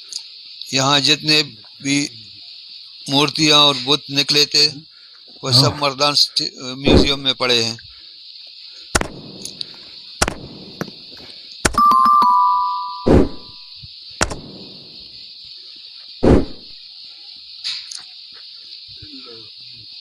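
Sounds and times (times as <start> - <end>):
insect chirring: 0.0 - 20.0
sharp thumps: 6.9 - 7.3, 9.0 - 11.0, 13.0 - 13.6, 14.2 - 14.8, 16.2 - 16.8
ringing chime: 11.8 - 13.6.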